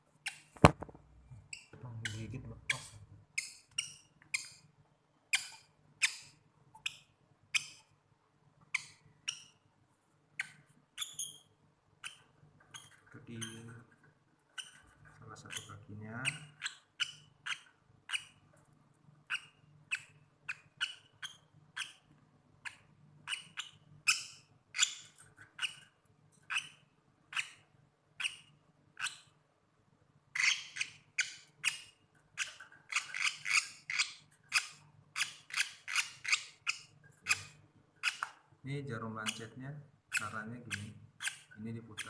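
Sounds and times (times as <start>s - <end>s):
lovebird squawking: 30.3s - 38.3s, 39.2s - 42.0s.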